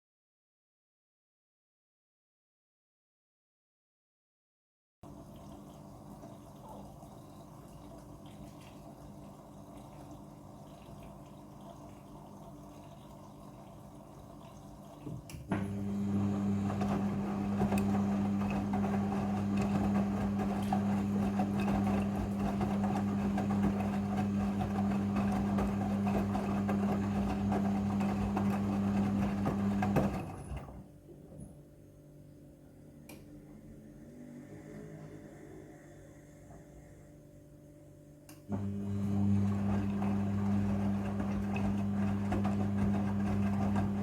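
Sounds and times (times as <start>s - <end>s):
washing machine pump hum: 5.0s - 31.6s, 38.4s - 44.0s.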